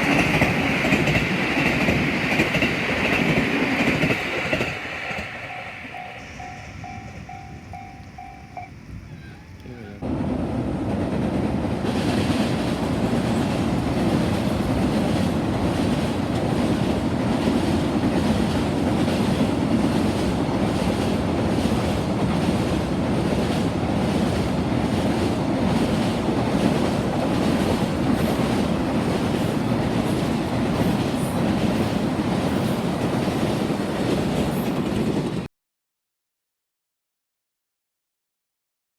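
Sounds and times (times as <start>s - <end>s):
freight train rumble: 0.0s - 35.5s.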